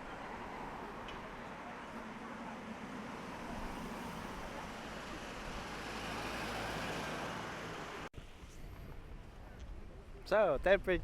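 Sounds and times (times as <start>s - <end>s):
street noise: 0.0s - 11.0s
vehicle engine passing: 0.2s - 8.1s.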